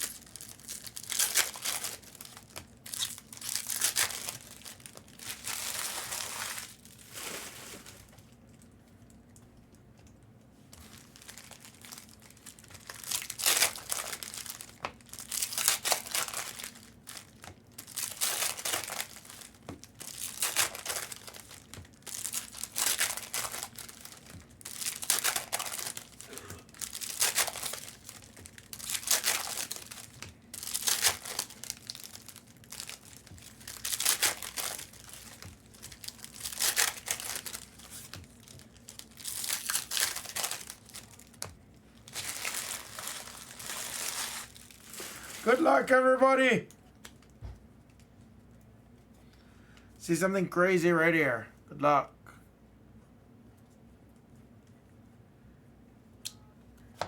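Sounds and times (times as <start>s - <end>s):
card wrappers crinkling and tearing: 0.0s - 8.3s, 10.7s - 47.3s.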